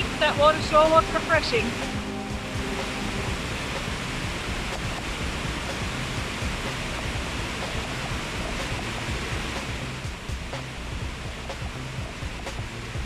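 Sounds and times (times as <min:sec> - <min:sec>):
waterfall rushing: 0:00.0 - 0:10.3.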